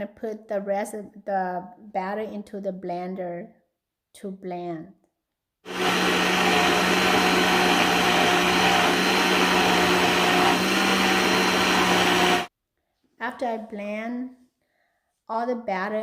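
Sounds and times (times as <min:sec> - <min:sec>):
blender whirring: 0:05.7 - 0:12.5.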